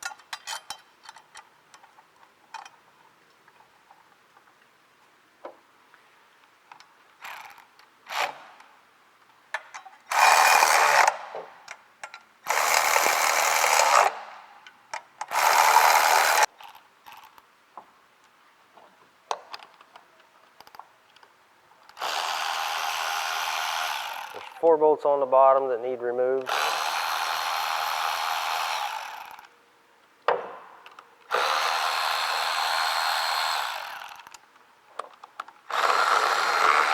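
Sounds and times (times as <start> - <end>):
cordless power tool running bolts: 7.2 - 8.6, 10.1 - 11.4, 12.4 - 14.3, 15.2 - 16.5, 21.9 - 24.7, 26.4 - 29.5, 31.3 - 34.4, 35.7 - 36.9.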